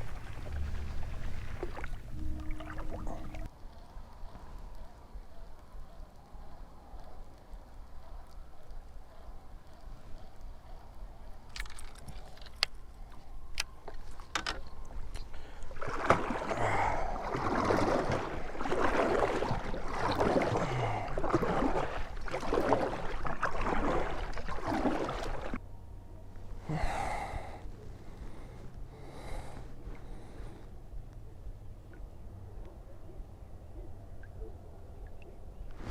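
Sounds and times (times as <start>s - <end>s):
paddle strokes splashing water: 0.0s - 3.5s, 15.3s - 25.6s.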